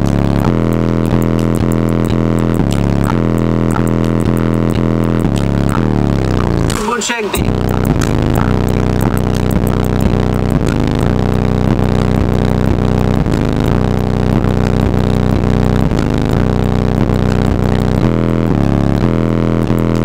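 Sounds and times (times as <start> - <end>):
bass-heavy electronic music: 0.0 - 20.0.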